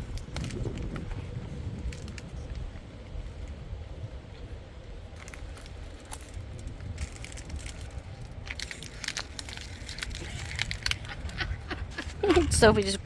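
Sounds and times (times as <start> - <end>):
dogs chewing toy crackling: 5.2 - 13.0.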